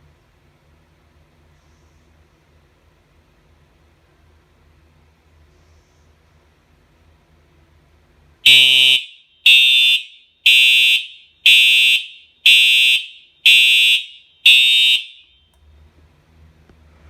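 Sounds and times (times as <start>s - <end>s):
fire alarm horn blasts: 8.4s - 15.5s.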